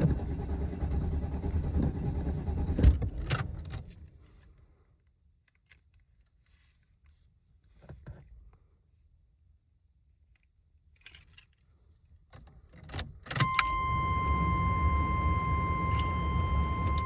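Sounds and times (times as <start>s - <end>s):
keys jangling: 2.9s - 4.2s, 10.4s - 13.8s
high-pitched electronic warning tone: 13.4s - 17.0s
low steady rumble: 13.4s - 17.0s.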